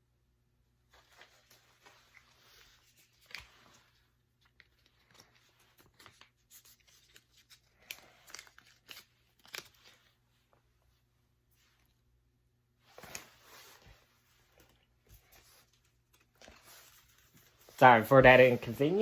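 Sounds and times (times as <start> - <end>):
foil wrappers crinkling: 1.1 - 10.2.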